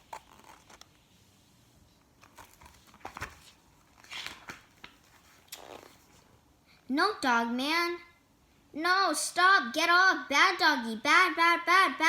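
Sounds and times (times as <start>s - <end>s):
paper pages rustling: 0.0s - 1.1s, 2.2s - 6.3s.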